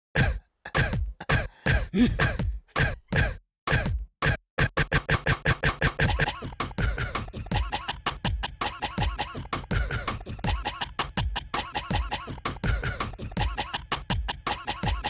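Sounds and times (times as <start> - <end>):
rhythmic coughs: 0.1 - 15.0.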